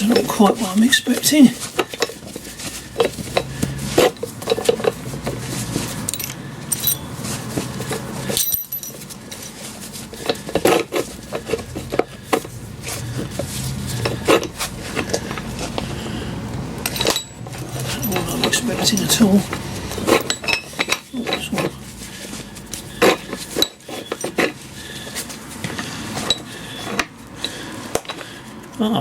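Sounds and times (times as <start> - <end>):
metallic clinks and knocks: 0.0 - 12.5, 16.8 - 21.8, 22.7 - 24.6, 25.7 - 28.3.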